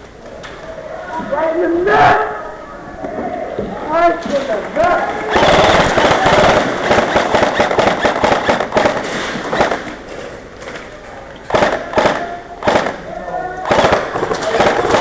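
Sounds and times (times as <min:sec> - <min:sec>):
airsoft guns firing: 0:05.1 - 0:10.2, 0:11.5 - 0:15.0.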